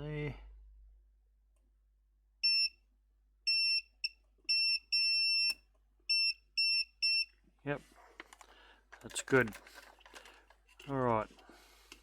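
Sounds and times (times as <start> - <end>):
multimeter short beeps: 3.5 - 7.3.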